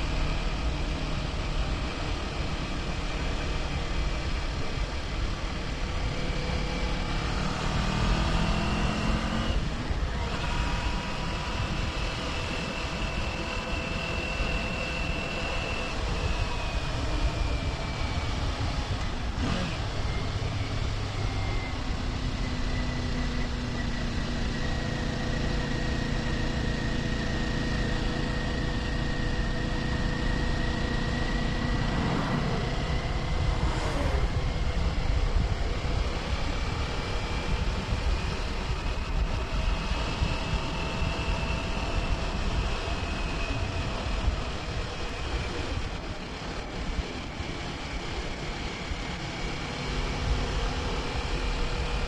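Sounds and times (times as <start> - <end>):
motorcycle engine cruising: 0.0 - 52.0
wind rush: 29.4 - 50.8.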